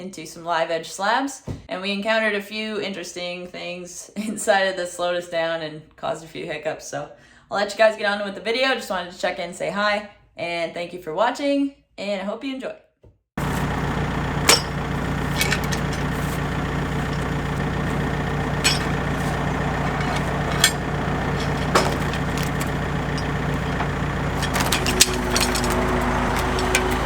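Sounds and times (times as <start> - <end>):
gas engine running: 13.4 - 27.0.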